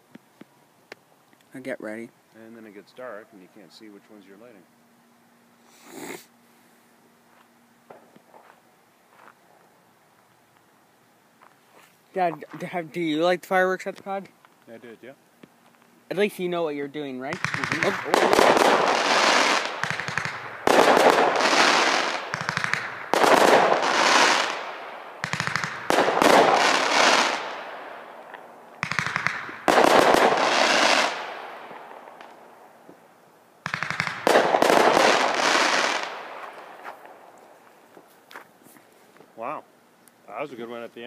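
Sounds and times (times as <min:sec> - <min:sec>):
fireworks bangs with crackling: 0:17.3 - 0:32.5, 0:33.6 - 0:37.2.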